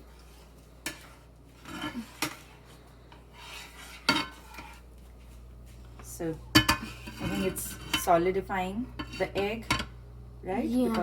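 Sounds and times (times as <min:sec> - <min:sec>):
utensil scraping frying pan: 0:00.0 - 0:04.9, 0:06.6 - 0:08.4, 0:09.0 - 0:09.9.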